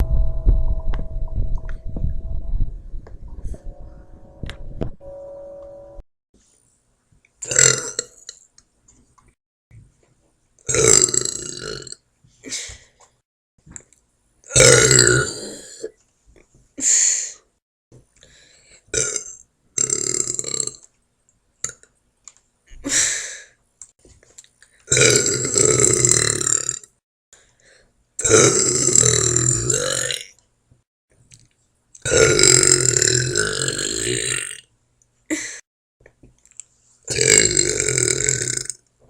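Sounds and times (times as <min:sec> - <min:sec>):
woman burping: 0:37.1 - 0:38.7.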